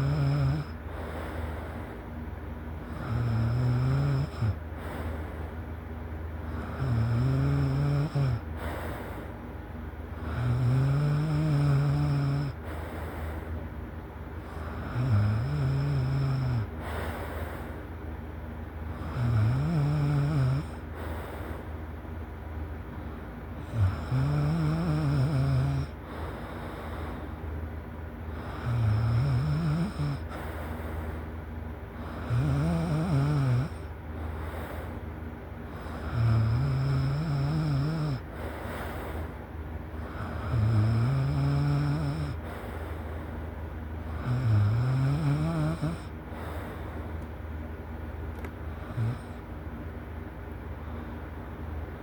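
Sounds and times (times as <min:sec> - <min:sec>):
person snoring: 0:00.0 - 0:01.6, 0:02.9 - 0:05.2, 0:06.5 - 0:09.2, 0:10.2 - 0:13.4, 0:14.5 - 0:17.7, 0:18.9 - 0:21.5, 0:23.6 - 0:27.0, 0:28.3 - 0:30.8, 0:32.0 - 0:33.9, 0:35.7 - 0:38.2, 0:40.0 - 0:42.9, 0:44.1 - 0:46.6, 0:48.7 - 0:49.4
quiet breaths: 0:00.0 - 0:52.0.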